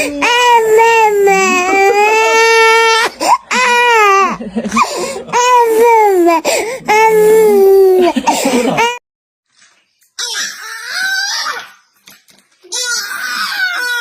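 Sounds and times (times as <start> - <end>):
baby crying: 0.0 - 8.1, 10.2 - 11.8, 12.7 - 14.0.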